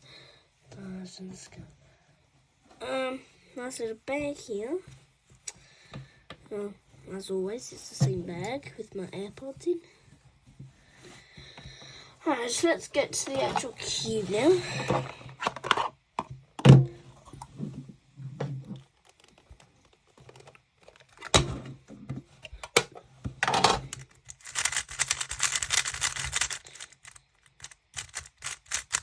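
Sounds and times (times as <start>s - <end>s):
rapid clicking and crinkling: 18.8s - 21.5s, 22.2s - 29.0s
packaging knocks and clicks: 22.4s - 29.0s.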